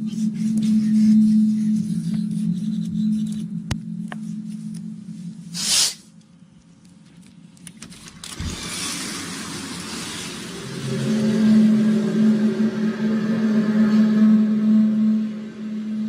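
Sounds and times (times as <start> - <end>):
low droning hum: 0.0 - 16.0
short loud hiss: 5.5 - 6.1
even rushing noise: 9.0 - 16.0.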